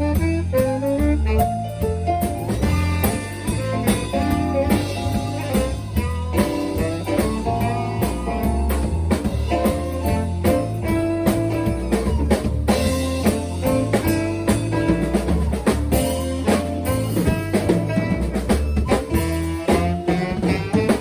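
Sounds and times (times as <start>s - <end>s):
bass line: 0.0s - 21.0s
drum kit beat: 0.0s - 21.0s
guitar: 0.0s - 21.0s.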